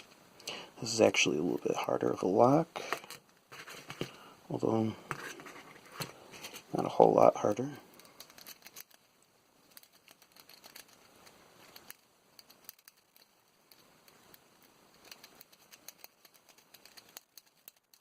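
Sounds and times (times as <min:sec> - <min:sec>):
lock picking clicks and scratching: 0:08.0 - 0:09.0, 0:09.7 - 0:18.0.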